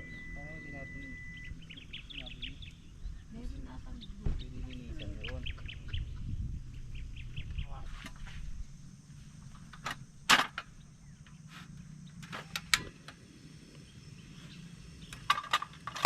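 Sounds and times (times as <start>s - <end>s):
low rumble: 0.0s - 11.2s
small birds chirping: 0.0s - 16.0s.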